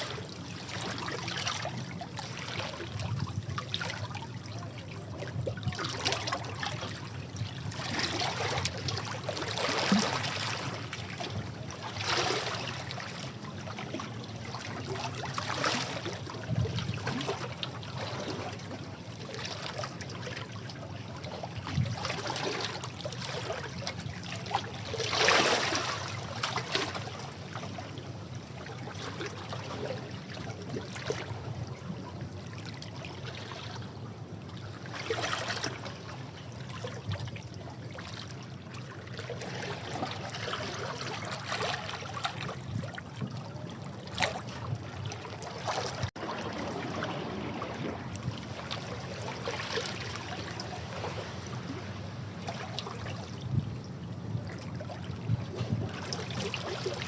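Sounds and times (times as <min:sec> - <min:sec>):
sea waves washing against rocks: 0:45.9 - 0:52.3.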